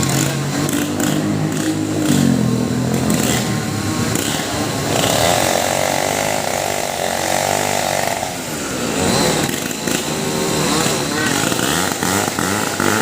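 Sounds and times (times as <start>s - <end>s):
chainsaw revving: 0.0s - 13.0s.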